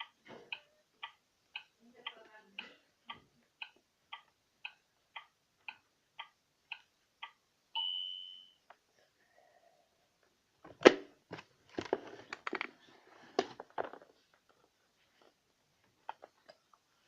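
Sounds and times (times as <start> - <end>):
timer ticking: 0.0 - 8.4
timer ding: 7.8 - 8.6.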